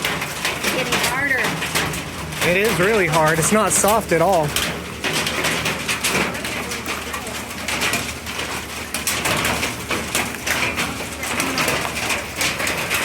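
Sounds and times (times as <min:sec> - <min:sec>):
downpour hiss: 0:00.0 - 0:09.2
hail pelting hard surfaces: 0:00.0 - 0:13.0.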